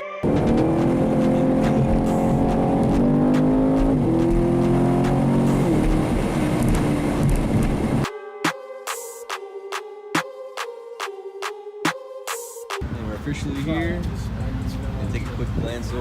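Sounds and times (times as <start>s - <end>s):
car engine accelerating: 0.2s - 8.1s.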